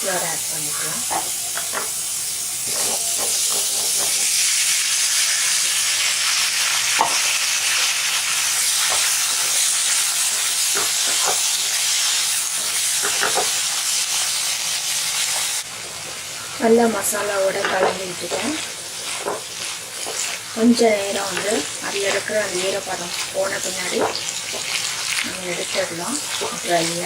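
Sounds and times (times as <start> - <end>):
vegetables sizzling in a pan: 0.0 - 27.0
spatula scraping a pan: 0.7 - 4.4, 17.1 - 27.0.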